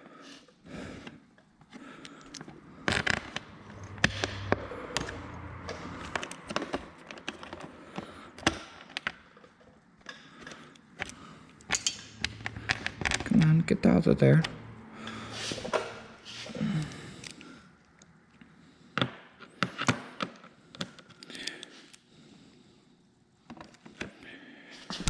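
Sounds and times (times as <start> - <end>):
low hum: 2.0 - 8.4, 11.0 - 18.6
tools and bolts clicking: 5.8 - 13.5.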